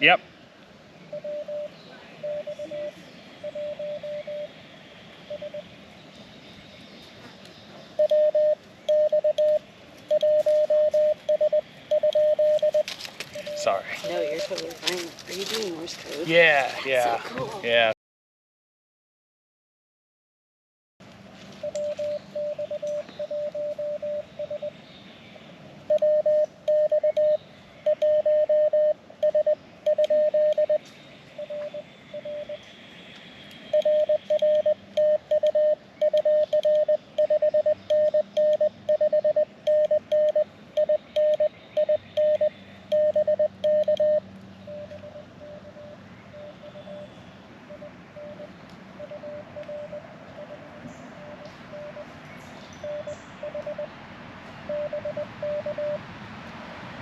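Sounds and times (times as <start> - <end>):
morse code tone: 1.1 - 4.5, 5.3 - 5.7, 8.0 - 14.7, 21.6 - 24.7, 25.9 - 30.8, 31.4 - 32.6, 33.7 - 47.1, 47.7 - 52.1, 52.8 - 53.9, 54.7 - 56.0.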